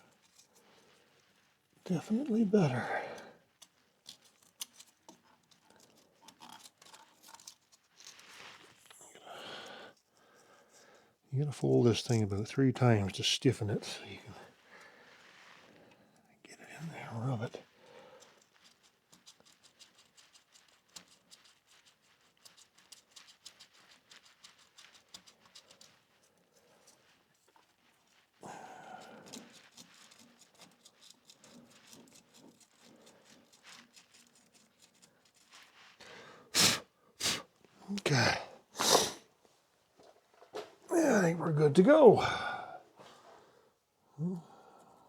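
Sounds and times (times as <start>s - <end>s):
light clicks of small parts: 3.6s - 9.0s
cloth rustling: 6.6s - 8.9s.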